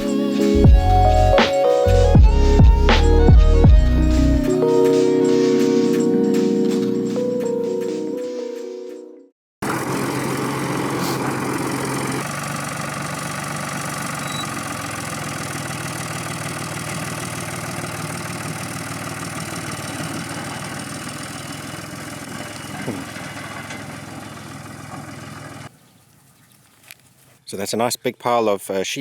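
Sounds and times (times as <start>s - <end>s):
vehicle engine idling: 9.6s - 26.4s.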